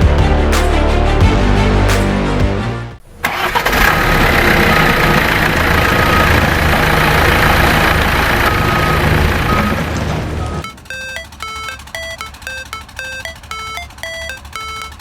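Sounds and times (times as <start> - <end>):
bulldozer diesel engine running: 4.3 - 15.0.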